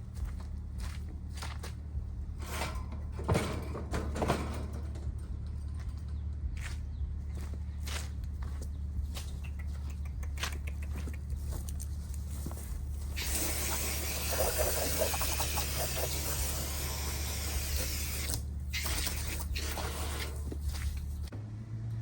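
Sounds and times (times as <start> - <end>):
steady low hum: 0.0 - 22.0
spray hissing: 13.1 - 20.6.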